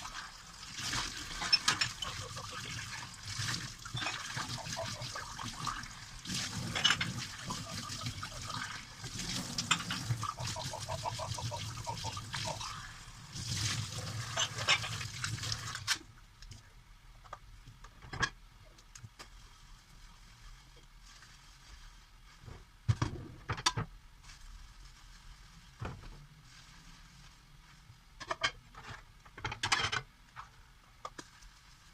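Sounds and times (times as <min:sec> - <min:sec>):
tap water running and splashing: 0:00.0 - 0:16.0
dishes clinking: 0:01.3 - 0:02.6, 0:03.9 - 0:05.7, 0:06.6 - 0:08.7.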